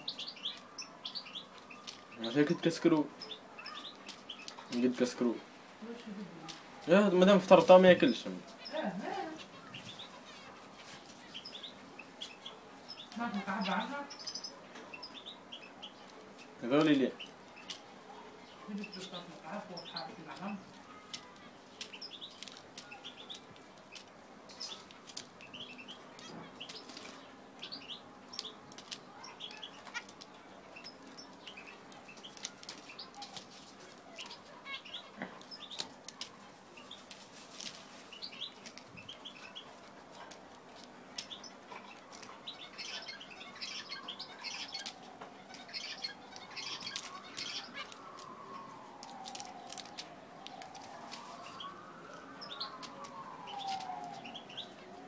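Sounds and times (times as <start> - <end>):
finches chirping: 0.0 - 37.2, 37.8 - 55.0
wings fluttering: 18.6 - 27.3, 28.3 - 55.0
siren wailing: 46.0 - 55.0.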